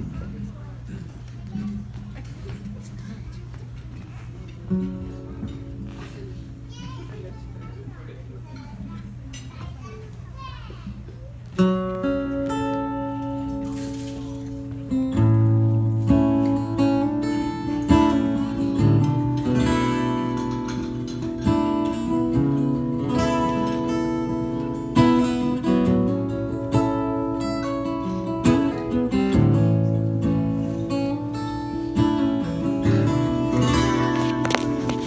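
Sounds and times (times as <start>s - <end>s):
acoustic guitar strumming: 4.7s - 7.0s, 11.6s - 35.0s.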